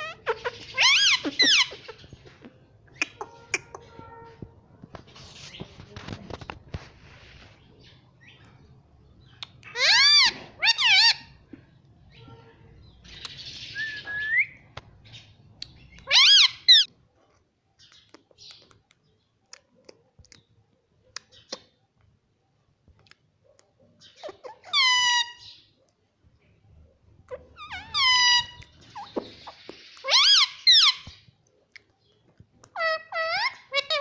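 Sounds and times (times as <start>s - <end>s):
parrot squawking: 0.0s - 2.1s, 2.9s - 4.0s, 9.6s - 11.3s, 16.0s - 16.9s, 24.2s - 25.6s, 27.3s - 31.1s, 32.7s - 34.0s.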